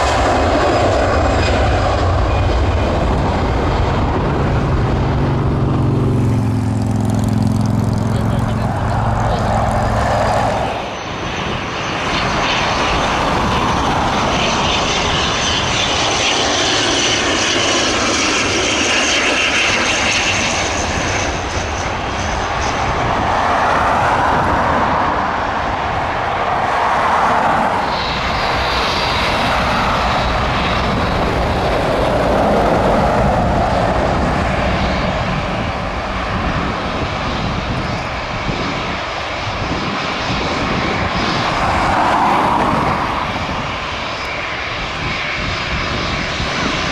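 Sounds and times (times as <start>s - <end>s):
jet engines rushing with whine: 0.0s - 46.9s.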